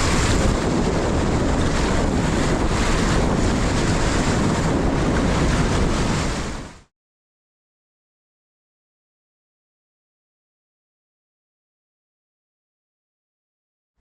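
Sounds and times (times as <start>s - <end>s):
river water rushing: 0.0s - 6.7s
wind buffeting microphone: 0.0s - 6.9s.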